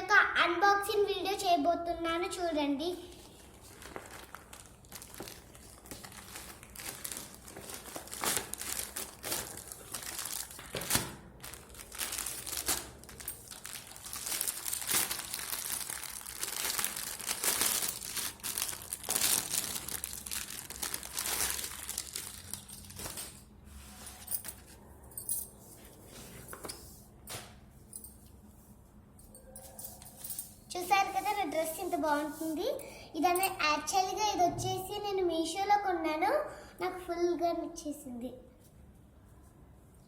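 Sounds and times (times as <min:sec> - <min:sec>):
packaging crinkling and rustling: 0:03.0 - 0:24.8
packaging tearing: 0:03.6 - 0:23.4.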